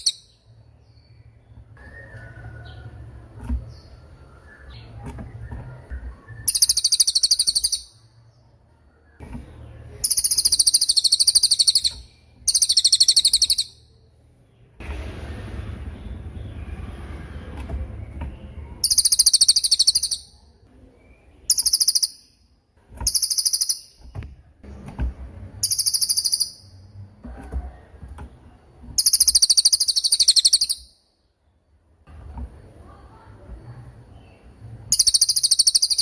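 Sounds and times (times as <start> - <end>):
bird singing rapid trills: 0.0 - 2.9, 3.7 - 8.5, 9.8 - 13.9, 18.8 - 24.1, 25.6 - 26.9, 29.0 - 31.3, 34.2 - 36.0.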